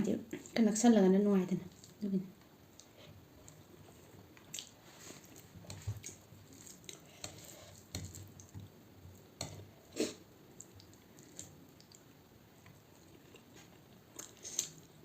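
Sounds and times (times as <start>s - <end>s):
wet eating squishes and smacks: 2.7s - 8.8s, 10.5s - 15.0s.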